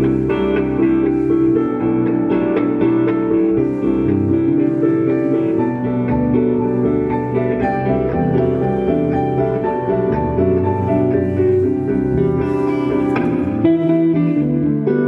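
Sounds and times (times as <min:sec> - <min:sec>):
guitar chords: 0:00.0 - 0:15.0
keyboard chords: 0:00.0 - 0:15.0
live band music: 0:08.8 - 0:14.5.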